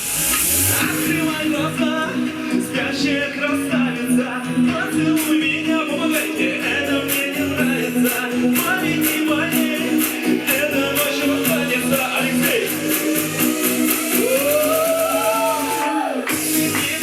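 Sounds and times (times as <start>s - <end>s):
bass and instruments: 0.0s - 17.0s
person singing: 0.0s - 17.0s
drum beat: 4.2s - 17.0s.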